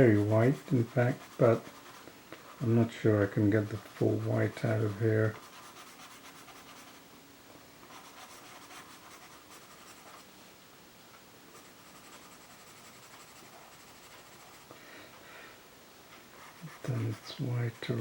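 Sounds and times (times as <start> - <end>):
pencil scratching on paper: 0.0 - 7.0, 7.8 - 10.2, 11.6 - 14.7, 16.1 - 18.0.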